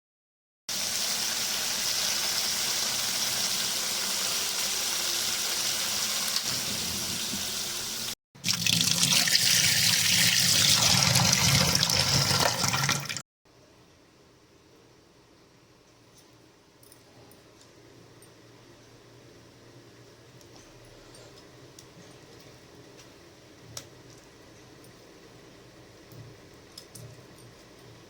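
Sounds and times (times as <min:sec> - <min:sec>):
tap water running into sink: 0:06.2 - 0:13.2.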